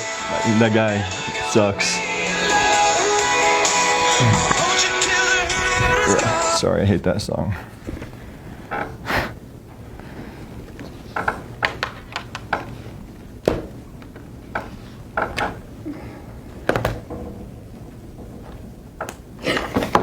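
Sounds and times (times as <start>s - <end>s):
low background hum: 0.0s - 20.0s
small knocks and clicks: 10.0s - 20.0s.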